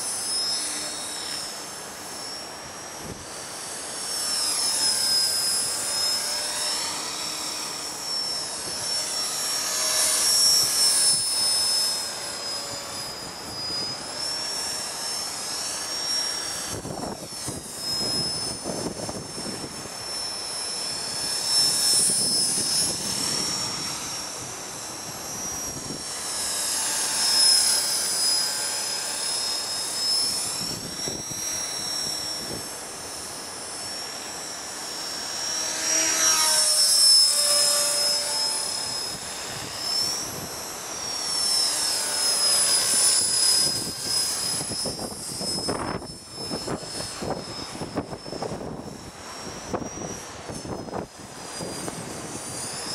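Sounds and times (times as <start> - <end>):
rc helicopter rotor whine: 0.0 - 52.9
wind buffeting microphone: 16.6 - 20.1, 20.9 - 26.3, 30.4 - 32.7, 42.8 - 52.9.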